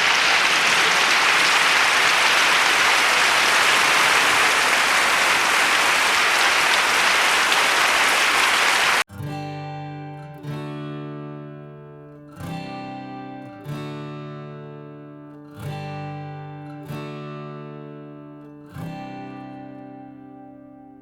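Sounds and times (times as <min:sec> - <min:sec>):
dense applause: 0:00.0 - 0:09.0.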